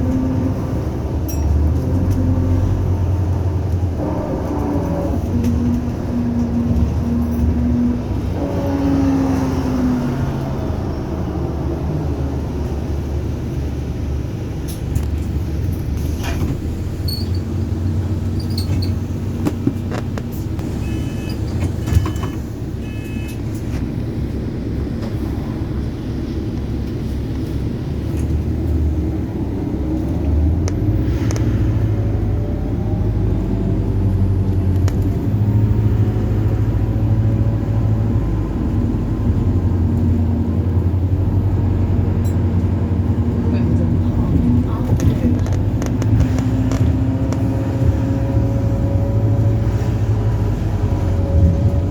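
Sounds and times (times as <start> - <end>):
bus engine droning: 0.0 - 51.9
short beeps: 20.8 - 23.4.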